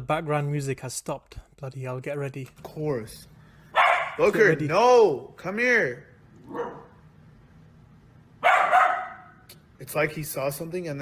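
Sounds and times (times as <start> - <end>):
dog barking: 3.7 - 4.2, 6.5 - 7.0, 8.4 - 9.4.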